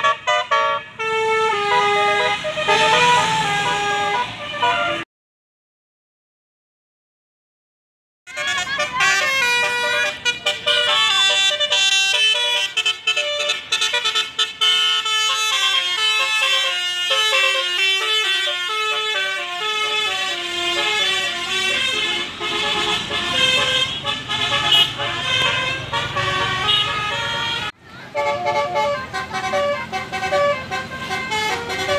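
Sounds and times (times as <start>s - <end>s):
musical air horn: 0.0s - 5.1s, 8.3s - 31.9s.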